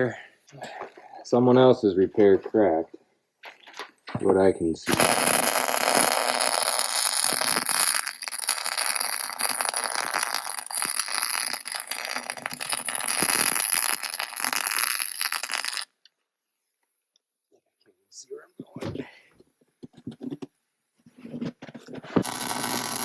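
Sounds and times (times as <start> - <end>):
welder arc crackling and sizzling: 4.9 - 15.9, 22.2 - 23.0.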